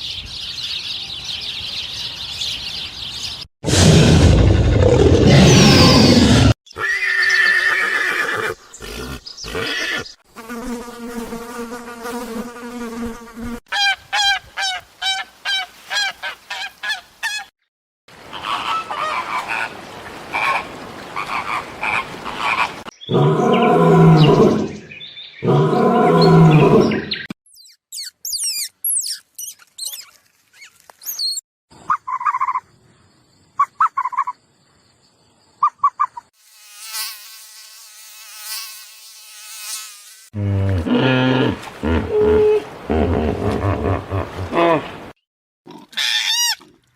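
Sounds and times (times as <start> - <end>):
fast short chirps: 27.5 - 32.6.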